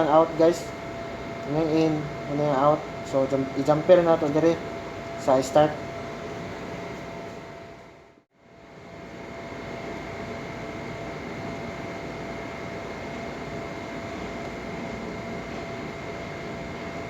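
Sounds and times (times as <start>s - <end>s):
mechanical hum and hiss: 0.0s - 17.0s.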